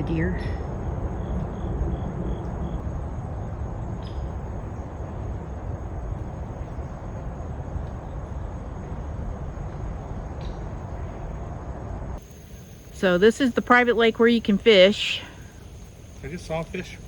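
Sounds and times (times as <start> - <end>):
outdoor background rumble: 0.0 - 17.0.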